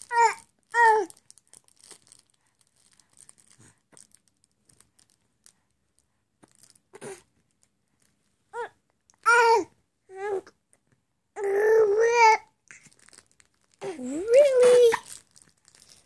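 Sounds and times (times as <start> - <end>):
baby cooing: 13.8 - 15.1.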